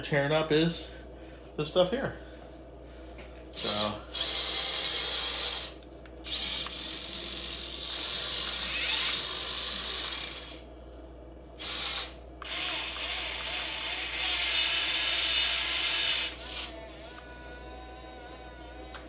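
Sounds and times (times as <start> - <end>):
toy excavator motors whirring: 3.6 - 10.6, 11.6 - 19.0.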